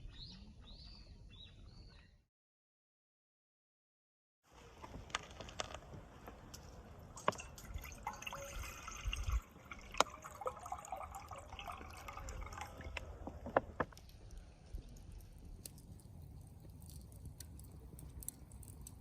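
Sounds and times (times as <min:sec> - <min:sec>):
campfire crackling: 0:04.6 - 0:19.0
fire popping and snapping: 0:04.6 - 0:19.0.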